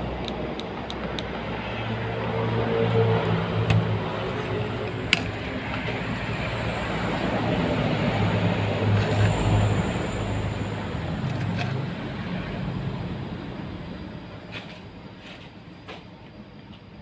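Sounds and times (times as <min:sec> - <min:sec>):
motor vehicle passing: 0:01.0 - 0:13.4.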